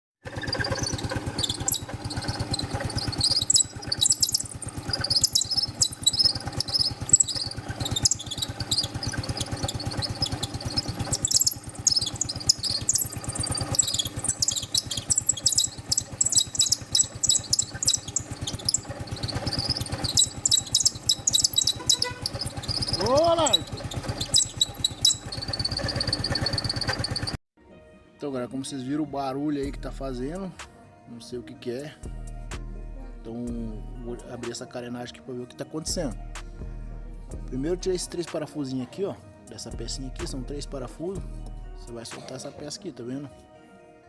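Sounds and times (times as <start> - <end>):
scooter engine idling: 0.2 - 27.4
high-pitched chattering: 0.4 - 27.3.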